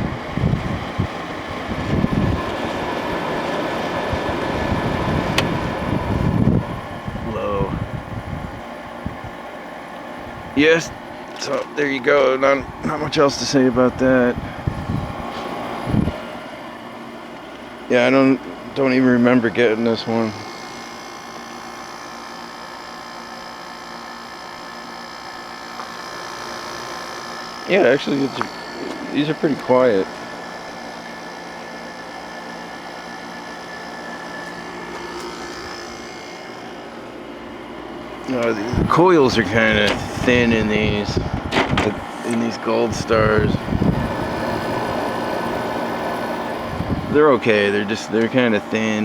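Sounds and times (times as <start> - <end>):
air conditioner airflow rushing: 0.0 - 49.0
faint unit hum: 0.0 - 49.0.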